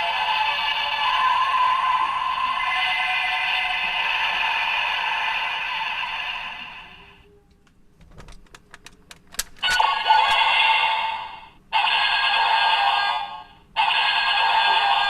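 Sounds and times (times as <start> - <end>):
sharp plastic clicks: 7.7 - 9.8
toy electronic sound effect: 9.6 - 15.0.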